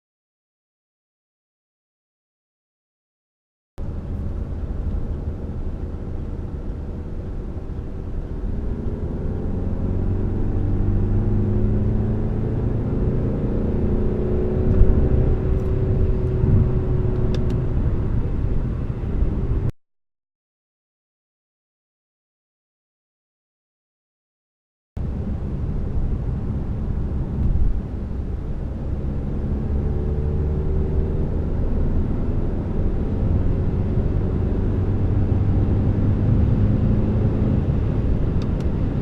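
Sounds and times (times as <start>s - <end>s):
diesel engine accelerating hard: 3.8s - 19.7s, 25.0s - 39.0s.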